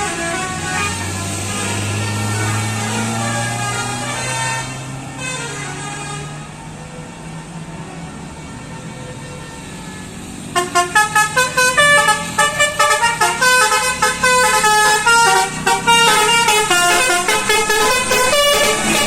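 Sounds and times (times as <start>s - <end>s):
bus multi-tone horn tune: 0.0s - 7.1s, 8.0s - 19.0s
low engine drone: 13.2s - 19.0s.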